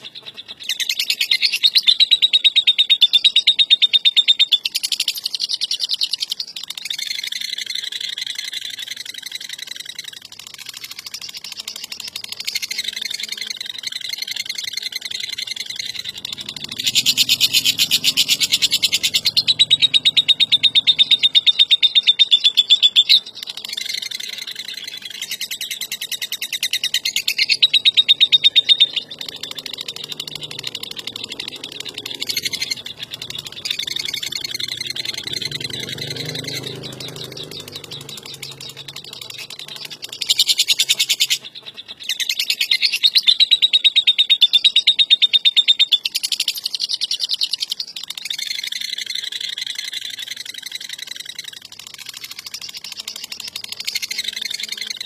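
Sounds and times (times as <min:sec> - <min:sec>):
lovebird chattering trills: 0:00.0 - 0:55.0.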